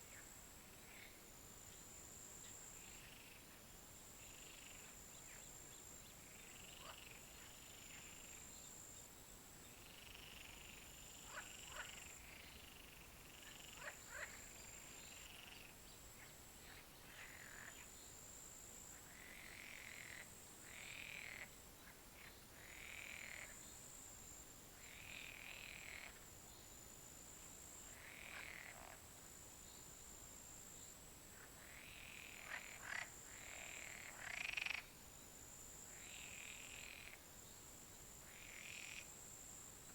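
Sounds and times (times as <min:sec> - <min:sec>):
frogs croaking: 0:00.0 - 0:01.2, 0:02.1 - 0:03.5, 0:04.2 - 0:08.5, 0:09.7 - 0:23.8, 0:24.7 - 0:26.3, 0:27.6 - 0:29.1, 0:31.3 - 0:35.0, 0:35.8 - 0:37.3, 0:38.1 - 0:39.2
sharp clicking frog calls: 0:04.2 - 0:04.9, 0:06.4 - 0:08.4, 0:09.7 - 0:15.7, 0:16.7 - 0:17.9, 0:19.0 - 0:23.6, 0:24.8 - 0:26.2, 0:27.9 - 0:29.0, 0:31.4 - 0:34.9, 0:35.9 - 0:37.2, 0:38.2 - 0:39.1.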